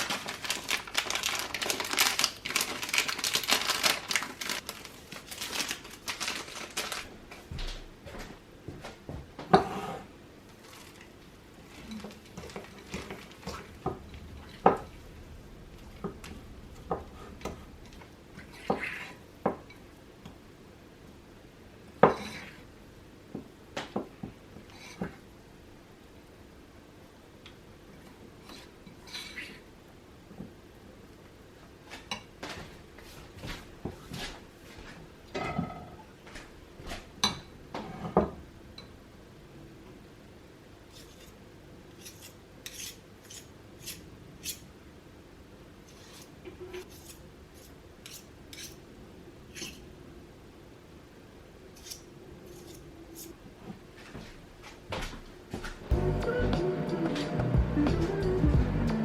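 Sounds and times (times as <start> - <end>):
fork scraping against bowl: 42.0 - 44.6, 45.9 - 48.8, 49.5 - 49.8, 51.8 - 53.4.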